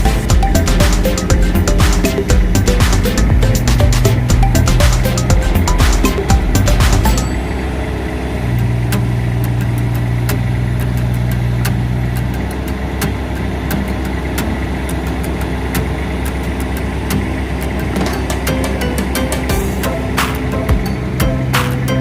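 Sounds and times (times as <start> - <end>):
diesel engine running: 0.0 - 22.0
sharp clicks and ticks: 8.6 - 19.6.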